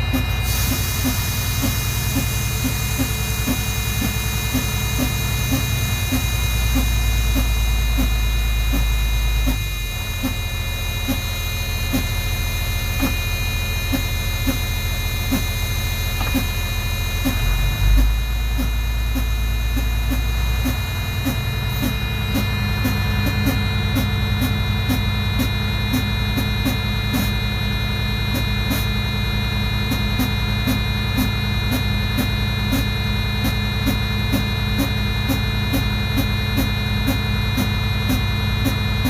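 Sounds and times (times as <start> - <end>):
air compressor running: 0.0 - 39.0.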